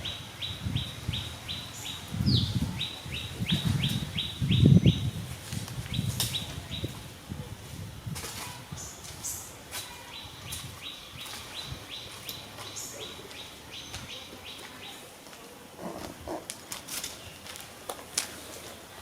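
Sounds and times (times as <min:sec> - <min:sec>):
clicks and rustles: 0:16.0 - 0:18.8.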